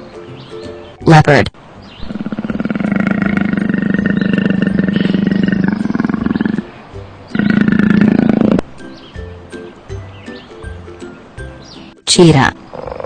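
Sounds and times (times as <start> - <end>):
leopard roaring: 2.0 - 6.7, 7.3 - 8.6.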